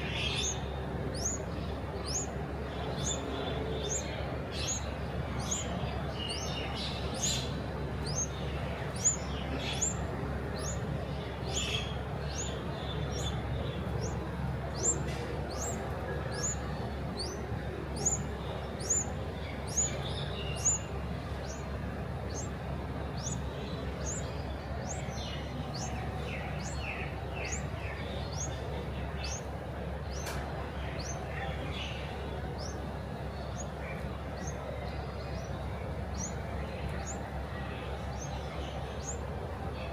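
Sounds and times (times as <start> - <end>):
small bird chirping: 0.0 - 39.3.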